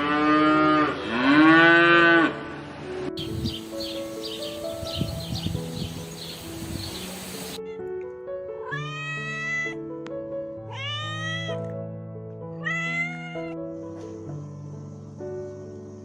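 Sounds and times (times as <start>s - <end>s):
background music: 0.0s - 16.0s
cat meowing: 8.6s - 9.8s, 10.6s - 11.7s, 12.6s - 13.6s.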